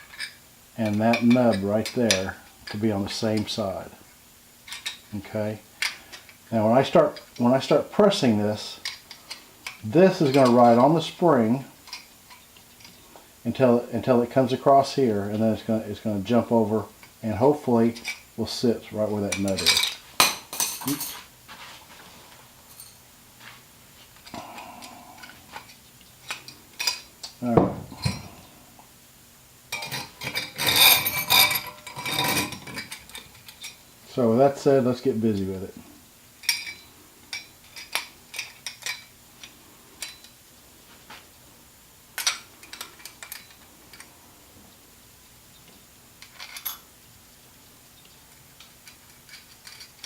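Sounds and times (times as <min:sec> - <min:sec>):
small metal parts clinking: 0:00.0 - 0:02.8, 0:04.6 - 0:05.1, 0:19.3 - 0:21.2, 0:29.7 - 0:33.8, 0:36.4 - 0:40.4, 0:42.2 - 0:44.1, 0:46.2 - 0:46.9, 0:48.3 - 0:50.0.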